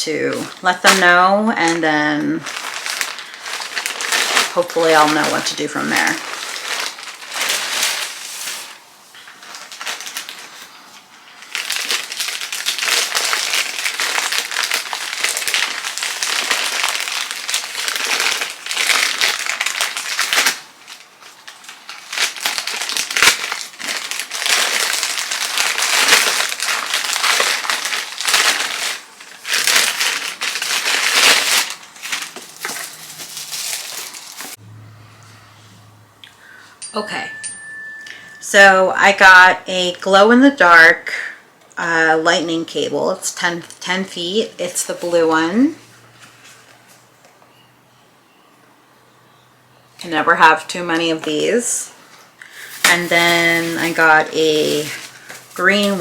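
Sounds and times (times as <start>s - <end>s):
plastic packaging crinkling: 0.3s - 34.6s, 50.4s - 56.0s.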